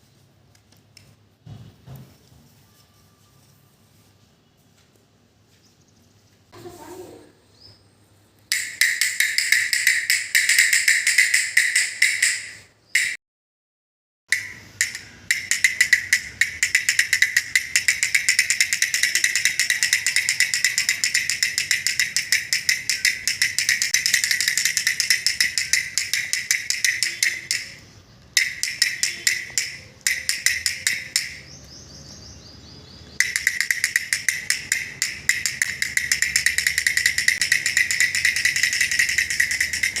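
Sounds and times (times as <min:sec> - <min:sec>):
sticks tapping cardboard drum: 0:08.5 - 0:13.2, 0:14.3 - 0:31.5, 0:33.2 - 0:40.0.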